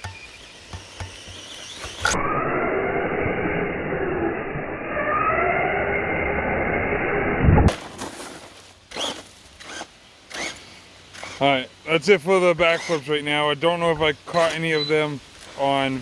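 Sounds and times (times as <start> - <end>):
electric motor whining: 0.1 - 7.0, 8.9 - 11.6, 12.6 - 13.2.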